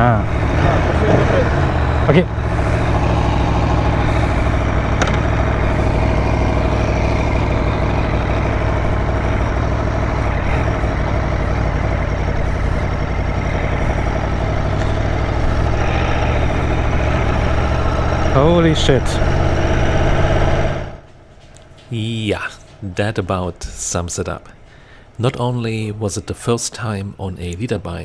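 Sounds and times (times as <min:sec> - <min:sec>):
motorcycle engine idling: 0:00.0 - 0:20.3.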